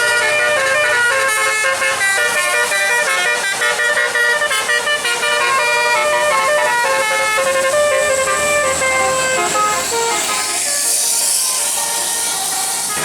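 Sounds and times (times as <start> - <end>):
musical air horn playing a tune: 0.0 - 13.0.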